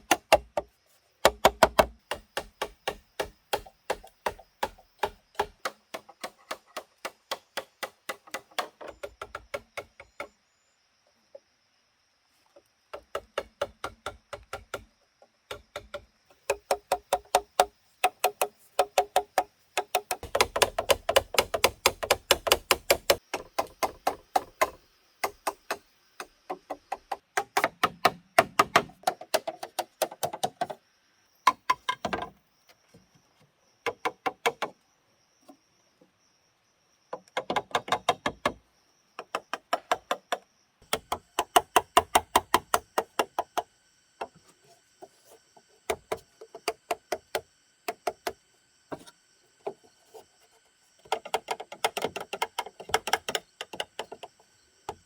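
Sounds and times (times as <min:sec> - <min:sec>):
blade chopping on wood: 0:00.0 - 0:10.1, 0:15.5 - 0:30.8.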